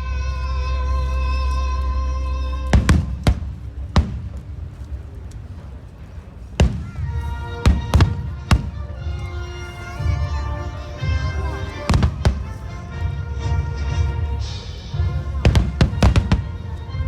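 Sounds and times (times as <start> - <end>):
music: 0.0 - 17.0
fireworks booming: 2.7 - 5.0, 6.5 - 17.0.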